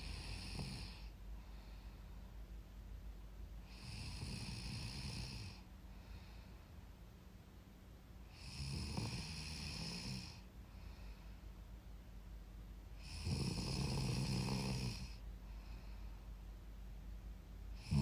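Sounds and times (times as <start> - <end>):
woman snoring: 0.0 - 1.1, 3.7 - 5.6, 8.3 - 10.5, 13.0 - 15.2, 17.8 - 18.0
faint breath: 0.0 - 2.6, 5.4 - 7.0, 10.3 - 11.7, 15.0 - 16.6.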